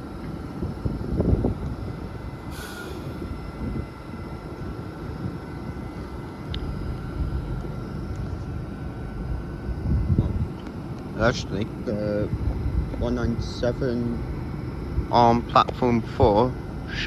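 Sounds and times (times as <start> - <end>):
thin whine: 0.0 - 17.0
train engines idling: 0.0 - 17.0
air release hiss: 2.5 - 3.2.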